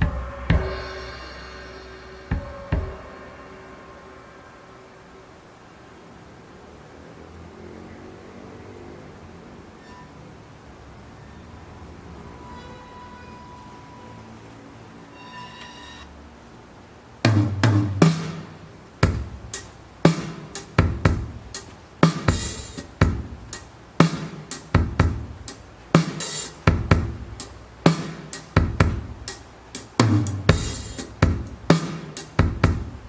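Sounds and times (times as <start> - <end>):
drum kit beat: 0.0 - 3.9, 17.3 - 33.0
tom fills: 0.0 - 5.2, 17.2 - 33.0
cymbal crashes: 0.0 - 5.6, 17.3 - 33.0.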